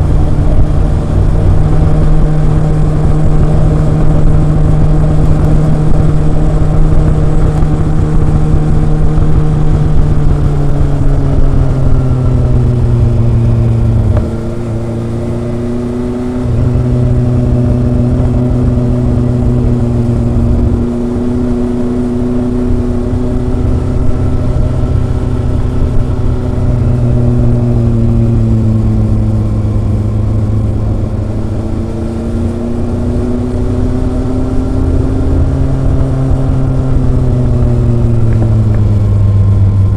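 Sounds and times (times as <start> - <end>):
motorcycle exhaust while riding: 0.0 - 39.9.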